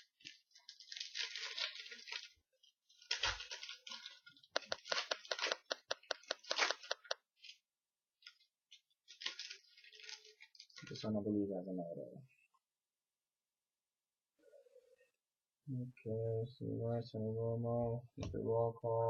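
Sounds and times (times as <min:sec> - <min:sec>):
wrapper crinkling: 0:00.0 - 0:07.6, 0:08.2 - 0:11.1
wrapper tearing and rustling: 0:00.0 - 0:07.6, 0:08.2 - 0:11.1.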